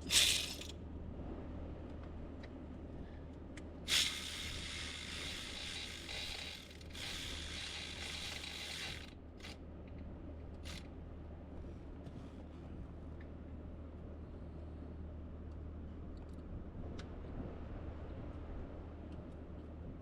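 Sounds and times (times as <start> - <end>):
ratchet wrench clicking: 0.0 - 0.7, 3.9 - 9.6.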